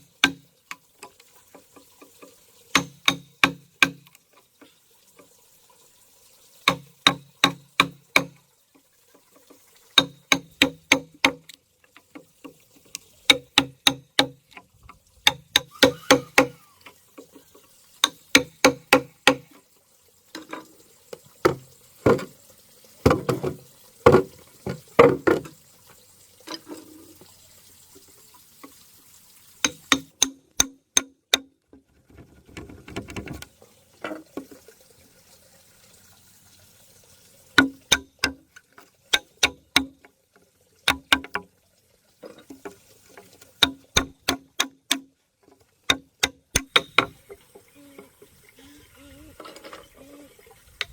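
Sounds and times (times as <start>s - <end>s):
hammer blows on wood: 15.3s - 16.8s.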